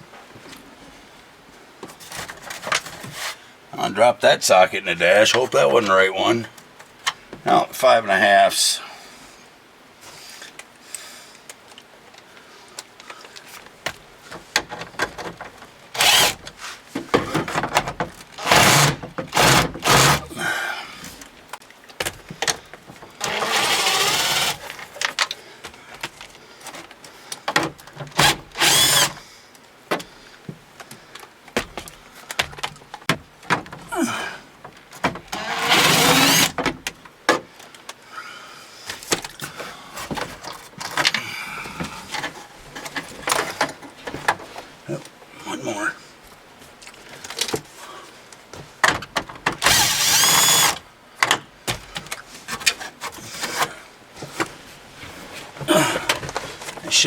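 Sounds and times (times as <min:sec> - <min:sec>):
power drill spinning out screws: 0:16.0 - 0:16.5, 0:18.4 - 0:20.3, 0:23.2 - 0:24.9, 0:28.2 - 0:29.2, 0:35.3 - 0:36.6, 0:49.6 - 0:50.8.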